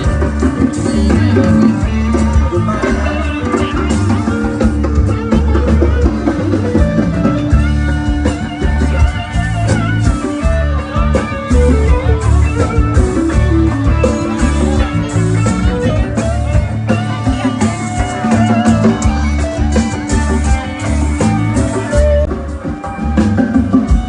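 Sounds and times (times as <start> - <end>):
bass and drums with steady beat: 0.0 - 24.0
guitar melody: 0.0 - 24.0.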